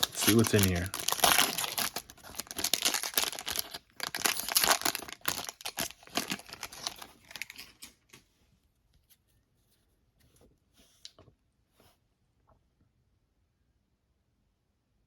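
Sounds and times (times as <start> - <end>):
plastic wrapper crinkling and tearing: 0.0 - 8.2.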